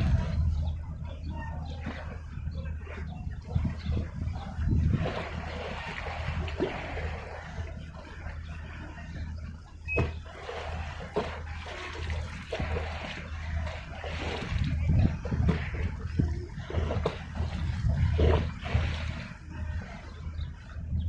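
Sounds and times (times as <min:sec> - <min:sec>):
ocean waves washing in: 0:09.8 - 0:20.2.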